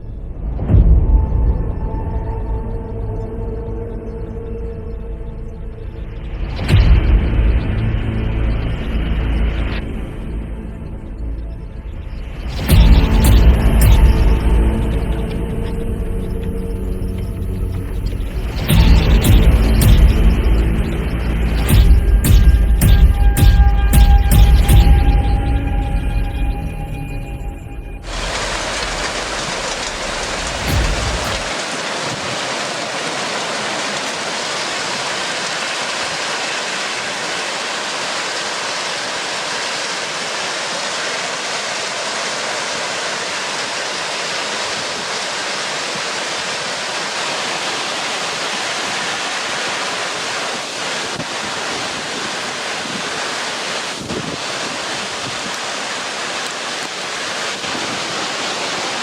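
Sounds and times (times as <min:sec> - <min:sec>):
heavy rain pouring: 0:12.3 - 0:59.0
low thunder rumble: 0:28.0 - 0:31.6.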